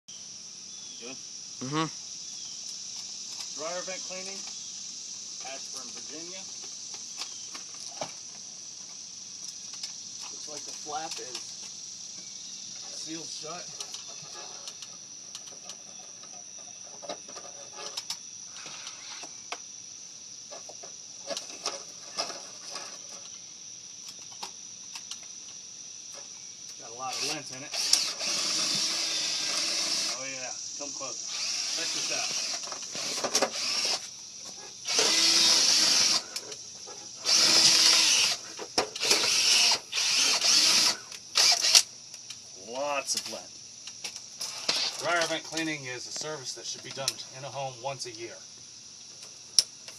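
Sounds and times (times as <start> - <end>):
crickets chirring: 0.1 - 49.9
power drill whirring: 27.1 - 30.2, 31.3 - 34.1, 34.9 - 36.3, 37.2 - 38.4, 39.0 - 41.9.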